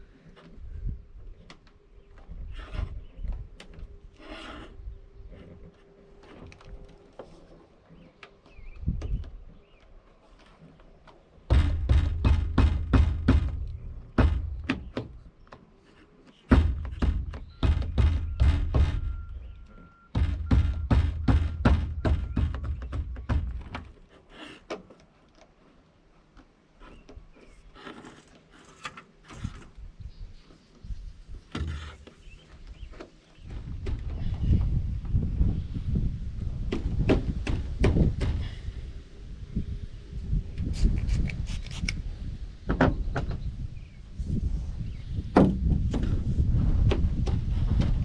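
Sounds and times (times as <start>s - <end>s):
rapid thumping blows: 11.5s - 15.2s, 16.5s - 23.9s.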